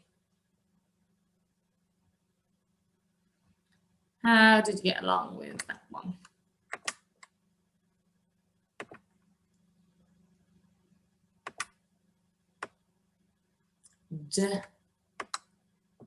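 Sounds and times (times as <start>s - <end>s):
faint steady hum: 0.0s - 16.0s
computer clicks: 5.6s - 7.3s, 8.8s - 9.1s, 11.4s - 11.8s, 15.2s - 15.5s.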